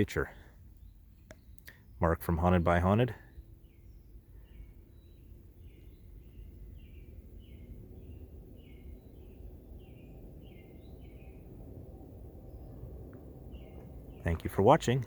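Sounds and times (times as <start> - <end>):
bird chirping: 0.0 - 15.0
faint low rumble: 0.0 - 15.0.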